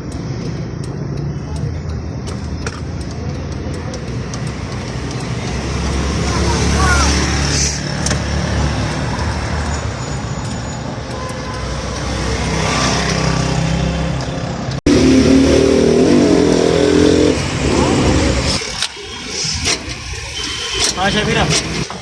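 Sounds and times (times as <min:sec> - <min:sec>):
vehicle engine running: 0:00.0 - 0:09.8
road traffic noise: 0:00.0 - 0:22.0
wavering engine-like drone: 0:14.9 - 0:22.0.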